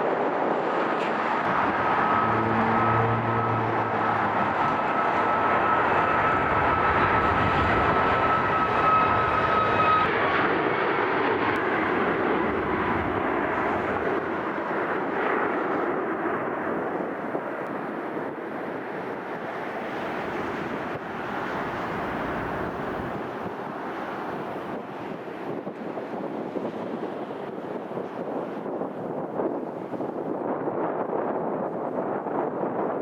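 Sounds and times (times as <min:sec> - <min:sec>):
aircraft engine rumble: 0:00.0 - 0:32.9
jet engine high whine: 0:00.0 - 0:33.0.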